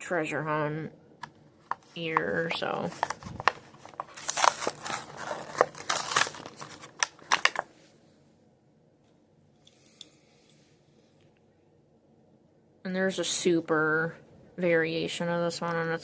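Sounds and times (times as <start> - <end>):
plastic packaging crackling: 1.6 - 7.7.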